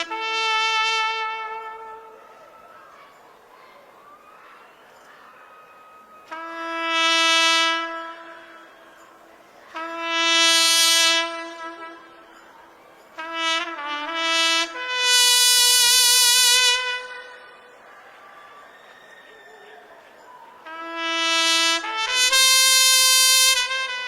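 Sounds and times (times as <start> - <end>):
trumpet playing long notes: 0.0 - 2.6, 6.2 - 17.7, 20.6 - 24.0.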